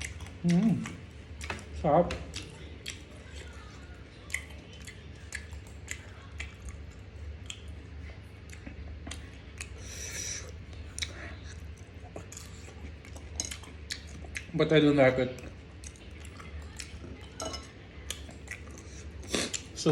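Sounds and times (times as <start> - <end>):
close-up chewing: 0.0 - 19.9.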